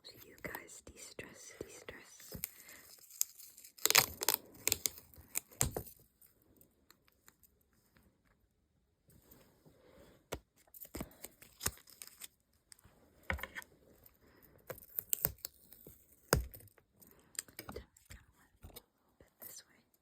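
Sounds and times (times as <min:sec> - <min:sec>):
sticker crinkling and peeling: 0:02.0 - 0:06.0.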